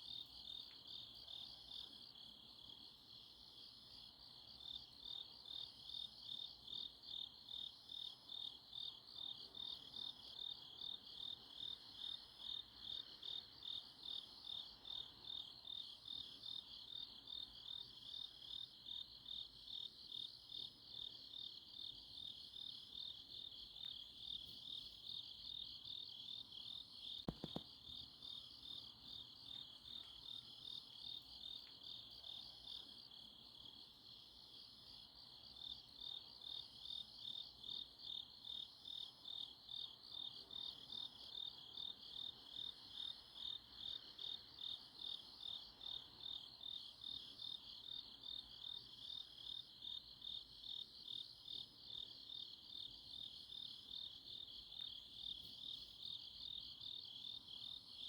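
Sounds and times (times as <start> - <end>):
crickets chirping: 0.0 - 58.0
short knock: 27.3 - 27.6.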